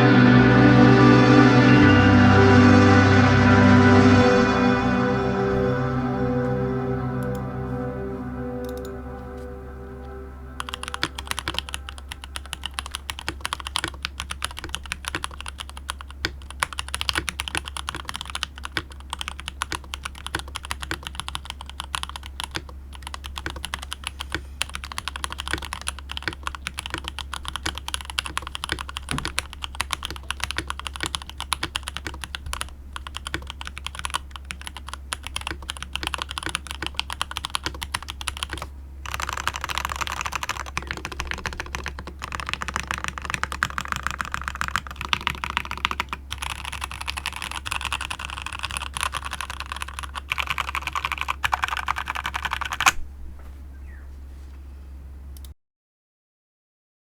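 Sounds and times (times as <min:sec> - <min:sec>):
fast typing on mechanical keyboard: 0:10.6 - 0:53.0.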